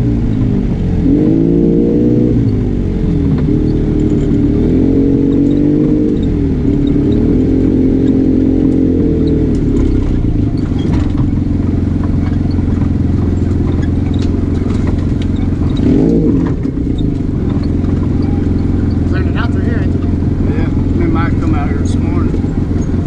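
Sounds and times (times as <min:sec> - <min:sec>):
vehicle engine running: 0:00.0 - 0:23.0
clicks and rattles: 0:12.0 - 0:20.2.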